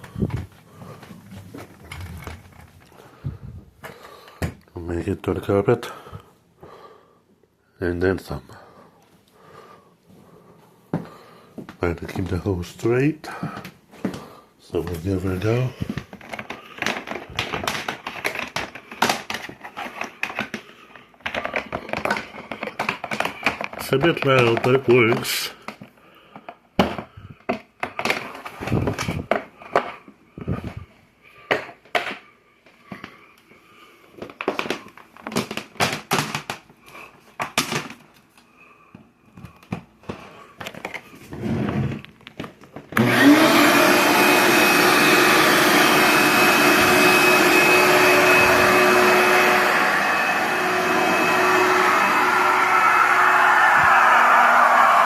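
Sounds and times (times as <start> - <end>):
wet dry vacuum running: 43.0 - 55.0.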